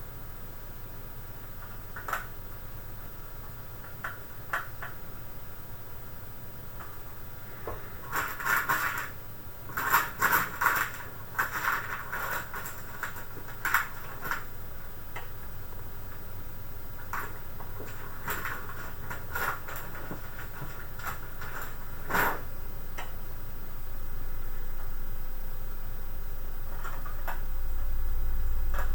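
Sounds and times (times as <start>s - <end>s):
computer parts clicking and clattering: 8.0s - 14.5s, 17.0s - 22.4s.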